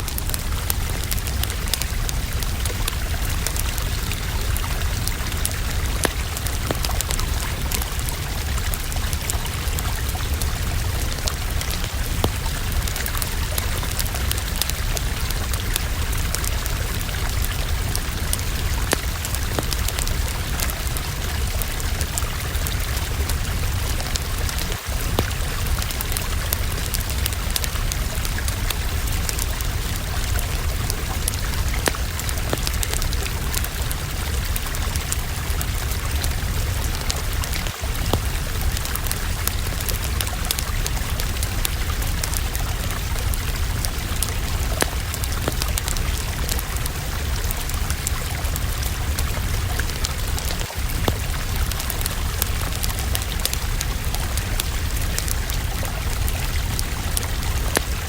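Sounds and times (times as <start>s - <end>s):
fire hiss and low rumble: 0.0s - 58.0s
wood fire crackling and popping: 0.0s - 58.0s.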